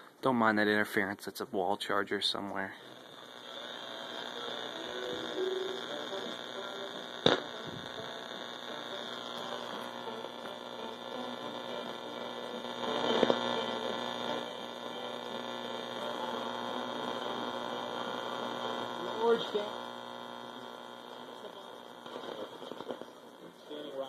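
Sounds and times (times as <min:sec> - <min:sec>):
radio speaker buzzing hum and hiss: 0:01.8 - 0:24.0.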